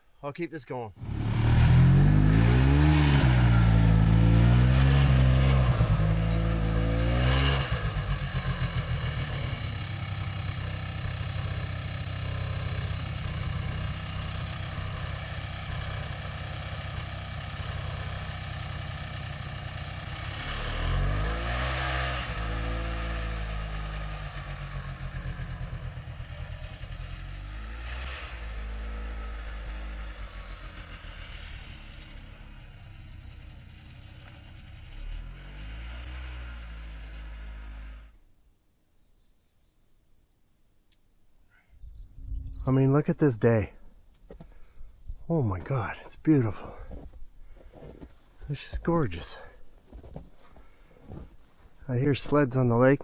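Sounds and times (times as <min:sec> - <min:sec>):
chainsaw cutting log: 0:01.0 - 0:25.0, 0:26.1 - 0:32.5, 0:33.1 - 0:38.1.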